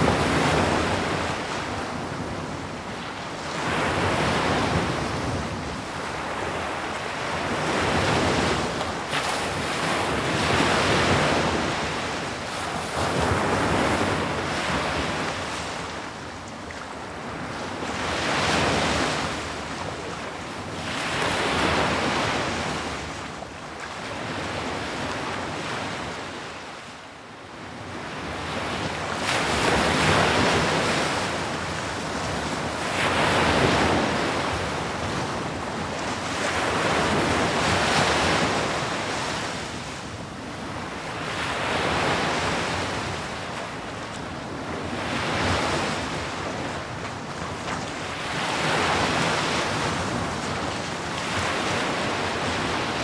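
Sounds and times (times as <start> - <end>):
sea waves breaking on shore: 28.0 - 53.0.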